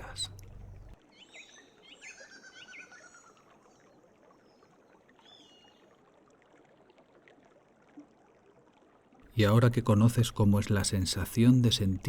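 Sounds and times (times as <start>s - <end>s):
bird trill: 0.0s - 3.1s
stream water flowing: 0.0s - 12.0s.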